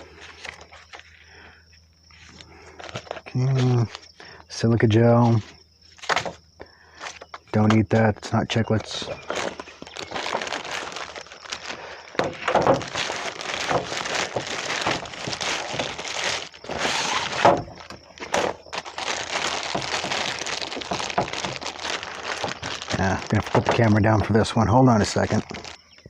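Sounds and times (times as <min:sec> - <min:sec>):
packaging rustling and crinkling: 0:00.0 - 0:01.2, 0:02.1 - 0:04.1, 0:05.9 - 0:06.4, 0:07.0 - 0:26.0
knocks and thunks: 0:12.2 - 0:18.6, 0:19.2 - 0:24.4.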